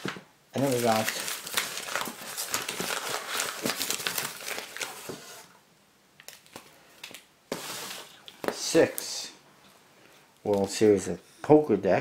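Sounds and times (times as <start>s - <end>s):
packaging crinkling: 0.0s - 5.5s.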